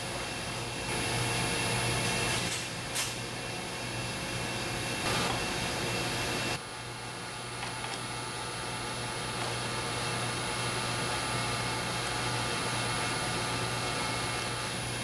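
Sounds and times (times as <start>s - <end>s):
machinery hum and hiss: 0.0s - 15.0s.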